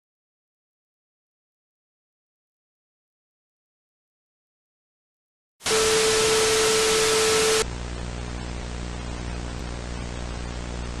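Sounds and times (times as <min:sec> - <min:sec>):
loud static hiss: 0:05.6 - 0:11.0
steady mid-pitched tone: 0:05.7 - 0:07.6
low hum: 0:05.7 - 0:11.0.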